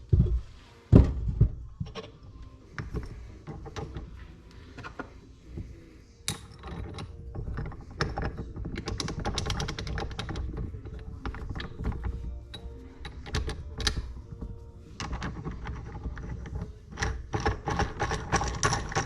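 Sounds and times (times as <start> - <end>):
metal tools clicking and clinking: 6.2 - 19.0.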